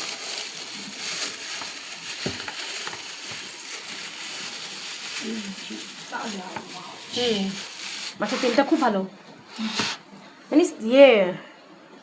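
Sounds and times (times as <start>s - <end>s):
handling rustle: 0.0s - 9.0s.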